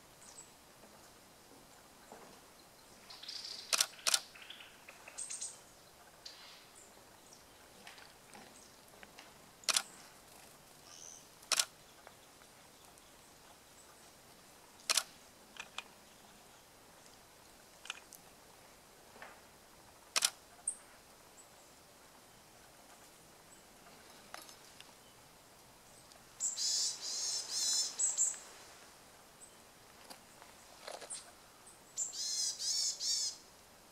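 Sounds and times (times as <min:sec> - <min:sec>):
sharp ticks: 0:03.7 - 0:04.3, 0:09.6 - 0:09.9, 0:11.4 - 0:11.7, 0:14.8 - 0:15.9, 0:20.2 - 0:20.4
bird giving harsh calls: 0:26.4 - 0:28.3, 0:32.0 - 0:33.4.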